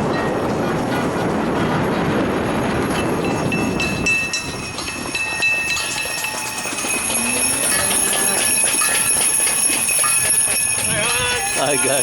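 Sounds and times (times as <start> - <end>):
jingling: 2.9 - 12.0
ringing and whistling noisemakers: 3.1 - 12.0.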